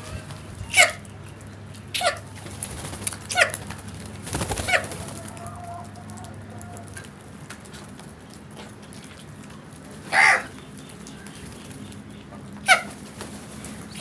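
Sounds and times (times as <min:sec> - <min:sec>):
crows cawing: 0:10.1 - 0:10.5.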